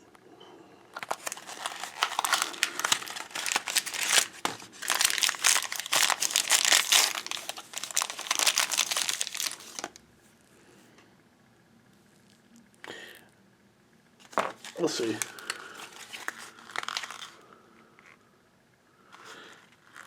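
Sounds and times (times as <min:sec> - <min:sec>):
plastic packaging crinkling: 0:00.9 - 0:10.0, 0:14.2 - 0:17.4, 0:19.6 - 0:20.0.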